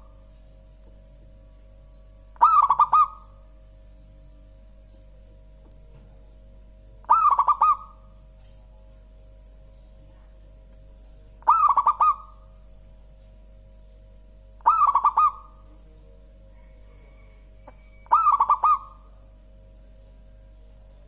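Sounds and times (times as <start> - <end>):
dove cooing: 0.0 - 0.2, 2.3 - 3.4, 7.0 - 8.1, 11.4 - 12.6, 14.6 - 19.3.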